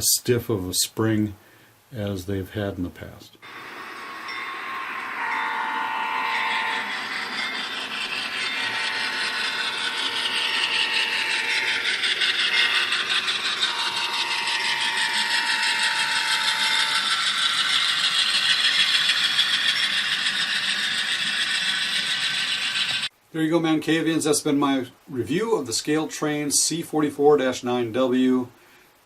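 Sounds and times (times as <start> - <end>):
model train motors whirring: 3.4 - 23.1
steady tone: 3.4 - 23.1.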